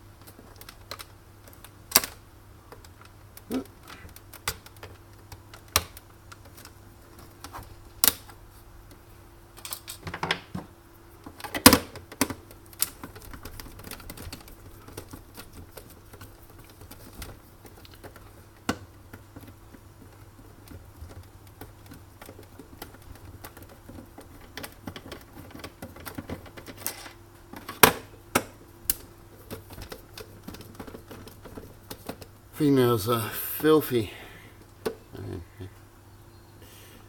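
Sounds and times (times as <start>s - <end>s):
tools and parts clicking: 9.6s - 10.4s, 21.8s - 32.3s.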